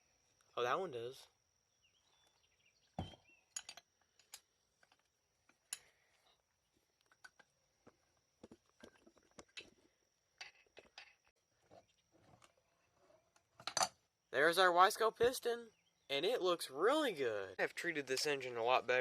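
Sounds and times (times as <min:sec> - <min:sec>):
tools and metal parts clicking: 0:03.6 - 0:04.4.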